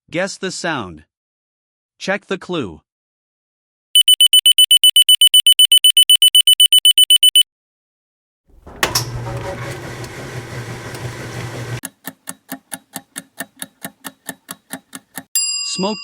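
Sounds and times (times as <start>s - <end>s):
smoke detector beeping: 4.0s - 7.4s.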